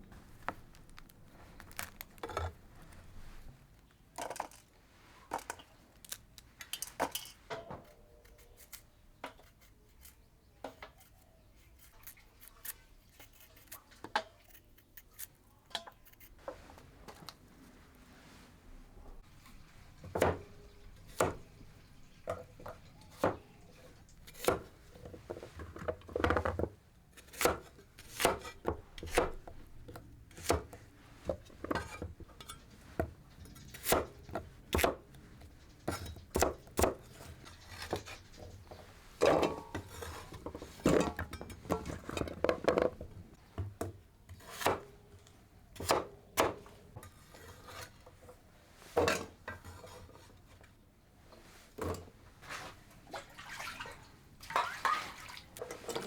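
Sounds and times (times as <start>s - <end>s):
utensils and dishes clinking: 6.6s - 7.7s, 31.5s - 34.4s, 37.1s - 43.2s
scraping: 35.2s - 43.4s.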